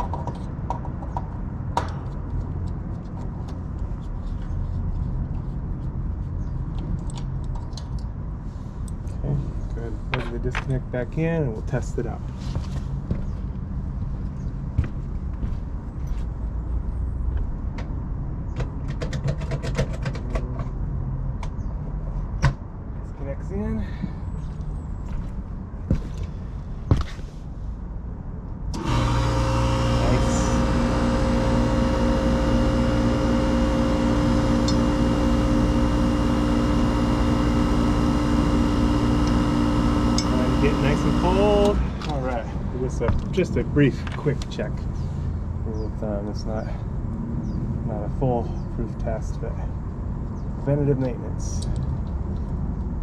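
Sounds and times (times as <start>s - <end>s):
sharp clicks and rattles: 6.7s - 8.1s, 17.4s - 20.8s
low machine hum: 28.7s - 43.9s.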